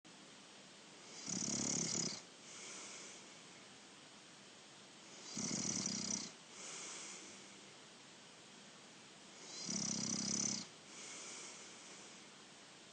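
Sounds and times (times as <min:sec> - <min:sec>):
person snoring: 0:01.1 - 0:03.1, 0:05.2 - 0:07.2, 0:09.4 - 0:11.6
soft breath out: 0:02.4 - 0:03.6, 0:06.5 - 0:07.6, 0:10.8 - 0:12.4.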